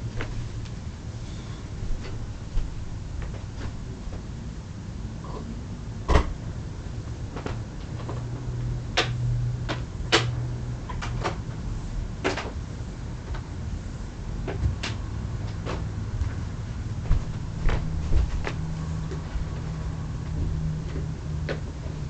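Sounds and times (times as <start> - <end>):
low steady hum: 0.0 - 22.0
sharp clicks and knocks: 9.0 - 11.4.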